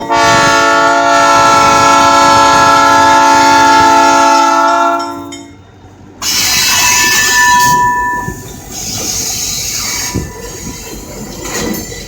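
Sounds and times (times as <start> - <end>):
locomotive air horn: 0.0 - 5.4, 6.2 - 8.4
train rushing by: 0.0 - 12.0.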